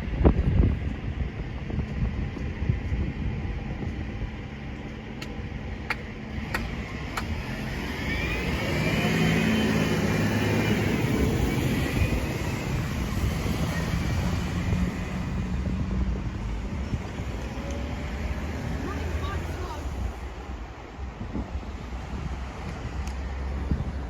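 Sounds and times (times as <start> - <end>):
wind noise: 0.0 - 24.0
sharp clicks: 4.9 - 7.4
vehicle passing by: 6.3 - 20.4.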